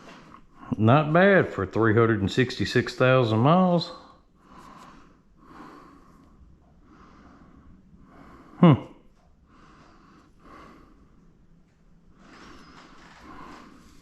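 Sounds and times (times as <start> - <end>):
person breathing: 4.0 - 11.5, 12.1 - 14.0
person grunting: 8.6 - 9.0.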